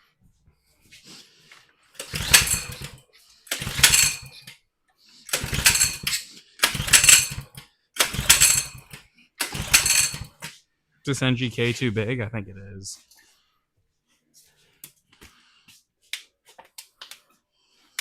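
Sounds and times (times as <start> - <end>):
recoil starter pulls: 2.0 - 4.5, 5.3 - 10.5
small engine turning over: 2.0 - 4.5, 5.3 - 10.5.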